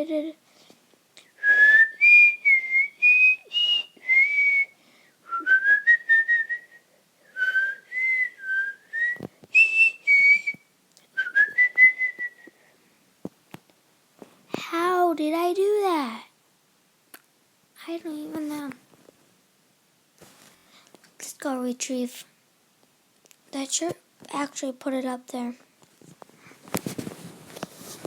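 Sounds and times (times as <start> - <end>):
person whistling a tune: 1.4 - 10.6, 11.2 - 12.6.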